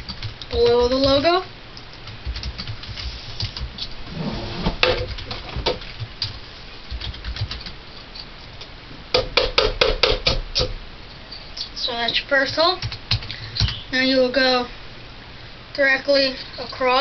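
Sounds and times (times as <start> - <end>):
hammer striking nail on metal: 9.2 - 10.7.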